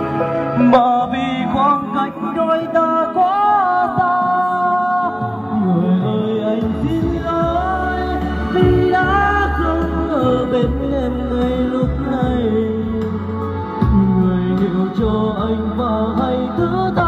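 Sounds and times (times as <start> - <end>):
steady low bass: 5.1 - 17.0.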